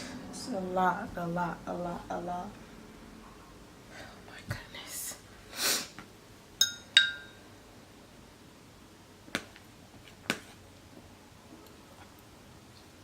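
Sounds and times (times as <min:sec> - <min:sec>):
soft hiss: 0:00.0 - 0:13.0
metal utensil clinking on dish: 0:06.6 - 0:07.4.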